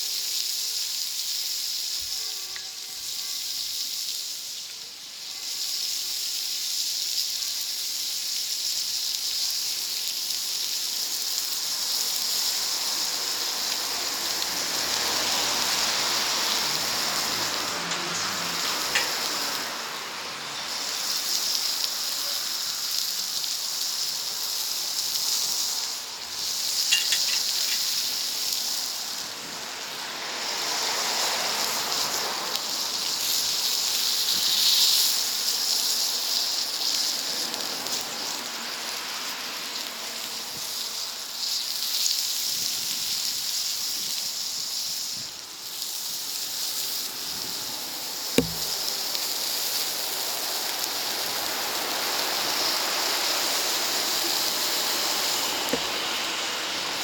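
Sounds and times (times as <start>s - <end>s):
food sizzling on a hot plate: 0.0s - 57.0s
small pops: 48.4s - 48.9s.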